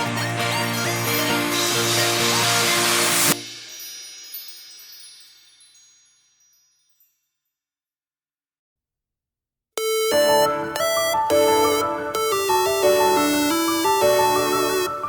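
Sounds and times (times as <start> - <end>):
chimes ringing: 3.2 - 7.5
lofi piano music: 10.1 - 15.0.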